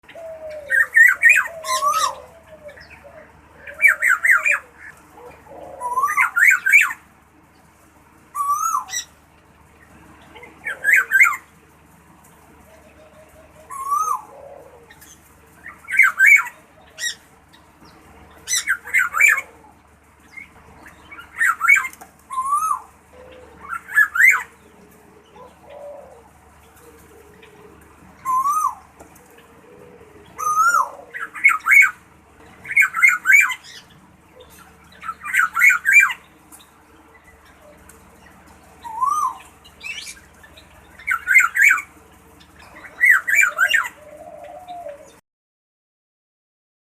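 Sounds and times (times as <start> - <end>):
bird calling in warbling bursts: 0.0 - 7.1, 8.3 - 9.2, 10.3 - 11.5, 13.2 - 17.3, 18.4 - 19.7, 20.3 - 24.6, 28.2 - 29.0, 30.4 - 36.3, 38.8 - 40.3, 41.0 - 42.0, 42.6 - 44.9.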